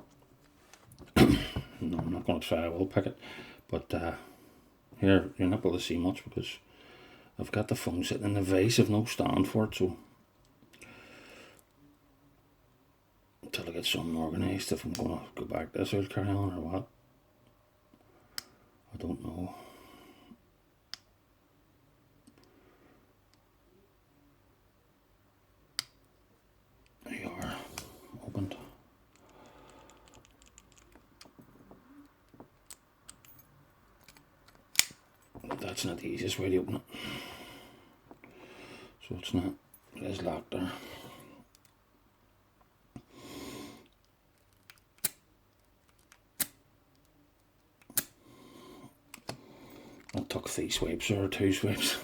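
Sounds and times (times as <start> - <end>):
lock pick metallic clicks: 29.1 - 31.4, 32.3 - 35.0, 44.0 - 47.1, 47.8 - 48.2
padlock clicking: 34.0 - 35.0, 44.4 - 45.2, 45.8 - 47.1.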